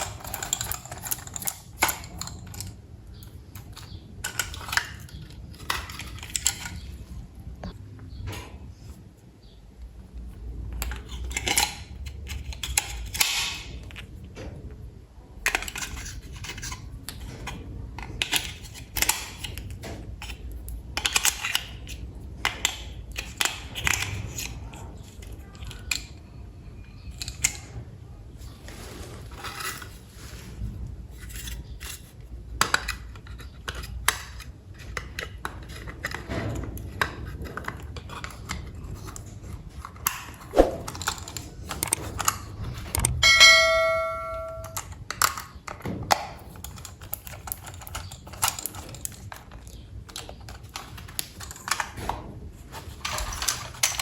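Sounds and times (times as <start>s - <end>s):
clicks of small toy parts: 0.0s - 6.9s, 10.8s - 14.1s, 15.4s - 26.2s, 27.1s - 27.8s, 44.7s - 52.0s.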